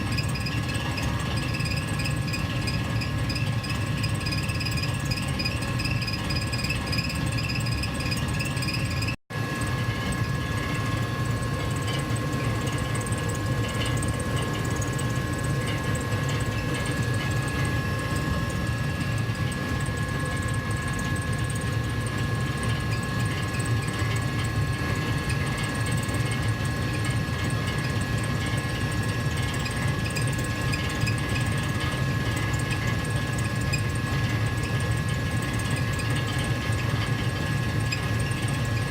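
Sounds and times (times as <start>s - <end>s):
furnace low rumble: 0.0s - 38.9s.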